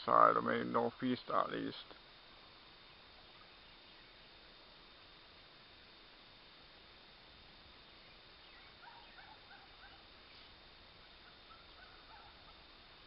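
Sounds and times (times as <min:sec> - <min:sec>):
faint outdoor hiss: 0:00.0 - 0:13.0
faint bird chirps: 0:02.8 - 0:04.7, 0:07.8 - 0:13.0.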